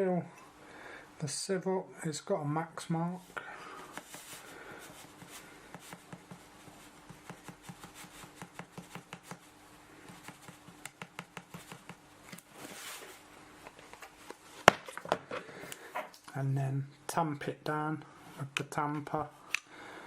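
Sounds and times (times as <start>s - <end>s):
faint steady hum: 0.0s - 20.0s
coffee grounds rustling: 11.5s - 13.3s.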